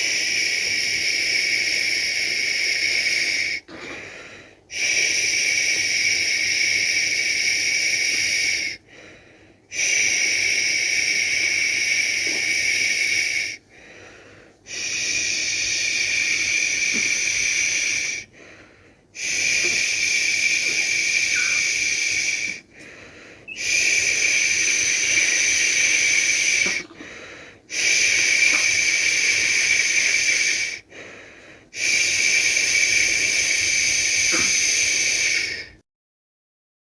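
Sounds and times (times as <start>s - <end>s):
person shushing: 19.2s - 22.6s, 23.5s - 30.8s, 31.8s - 35.8s.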